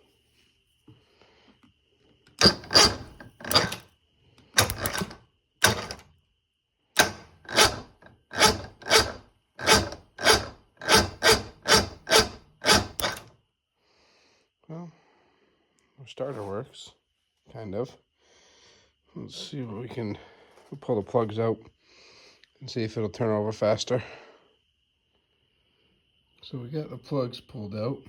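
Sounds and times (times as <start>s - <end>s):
starter motor cranking engine: 2.4s - 3.8s, 4.6s - 6.0s, 7.0s - 13.3s.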